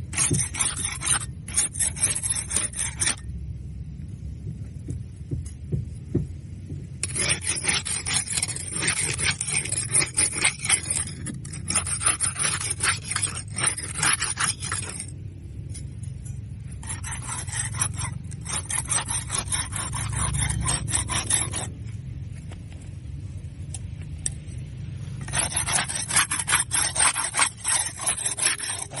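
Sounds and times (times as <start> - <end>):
barnacles scraped off hull: 0.0 - 3.3, 7.0 - 15.1, 16.8 - 21.8, 25.2 - 29.0
steady low rumble: 0.0 - 29.0.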